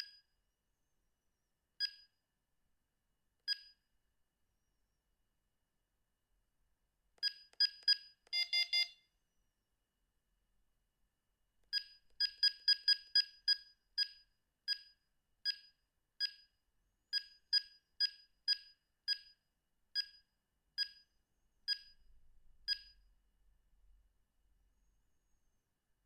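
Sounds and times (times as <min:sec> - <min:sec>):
mobile phone key beeps: 0:07.2 - 0:09.0.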